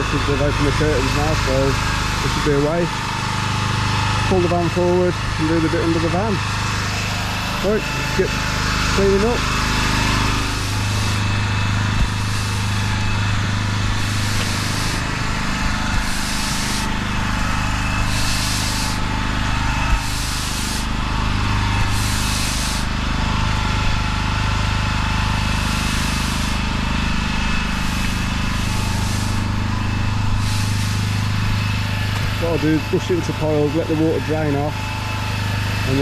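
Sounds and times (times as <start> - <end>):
pressure-washer engine drone: 0.0 - 36.0
broom sweeping wet paving: 5.6 - 24.2, 25.4 - 34.7.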